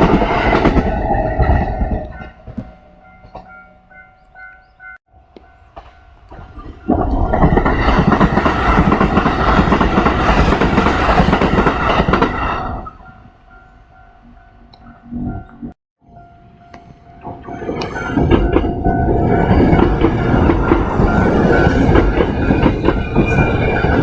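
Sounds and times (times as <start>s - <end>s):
electric train passing: 0.0s - 24.0s
level-crossing warning bell: 1.3s - 8.4s, 12.8s - 24.0s
wheel clatter on rails: 17.2s - 24.0s.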